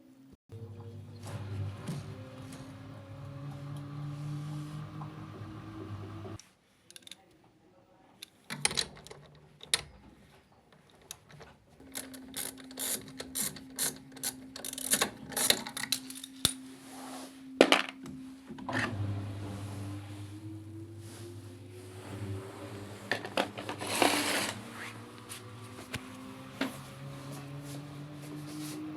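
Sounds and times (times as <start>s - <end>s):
hum rising in pitch: 0.5s - 6.4s, 16.4s - 28.9s
tools and metal parts clattering: 8.3s - 16.6s
steady hum: 15.8s - 24.0s.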